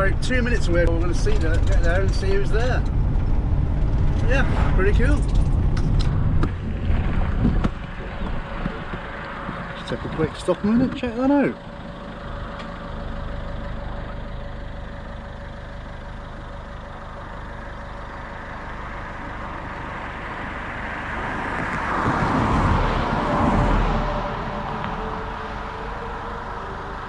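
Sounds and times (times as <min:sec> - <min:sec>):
van engine idling: 0:00.0 - 0:21.8, 0:22.7 - 0:27.0
rushing sound: 0:03.2 - 0:09.8.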